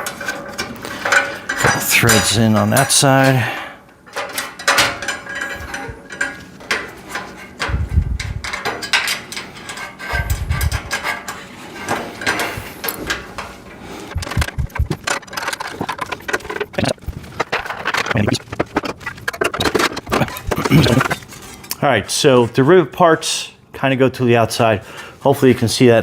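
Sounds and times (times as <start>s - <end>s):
metal parts clinking and knocking: 0.0s - 3.4s, 4.0s - 21.7s
low thumps: 7.7s - 8.5s, 14.1s - 15.1s.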